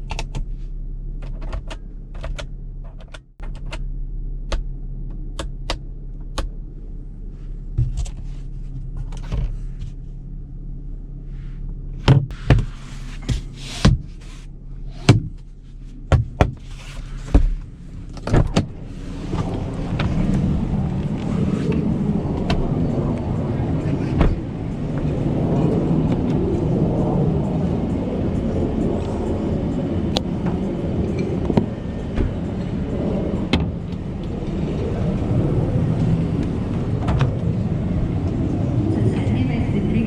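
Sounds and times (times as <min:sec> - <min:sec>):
engine humming at low speed: 0:00.0 - 0:40.0
rushing engine and tyre noise: 0:00.0 - 0:40.0
sharp knocks and clunks: 0:16.1 - 0:16.6.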